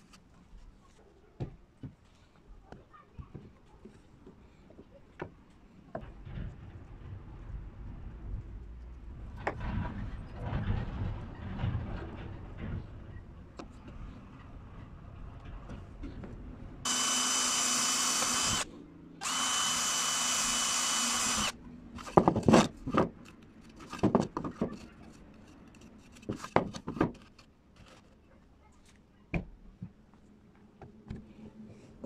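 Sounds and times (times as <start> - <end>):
knocks and clatter: 9.3 - 13.3
electric drill whining: 16.9 - 21.6.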